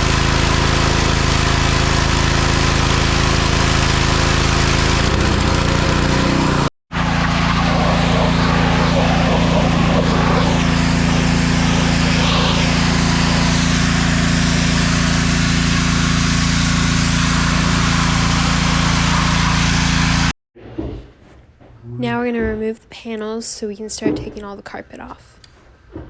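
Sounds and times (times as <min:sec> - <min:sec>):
outboard motor running: 0:00.0 - 0:20.3.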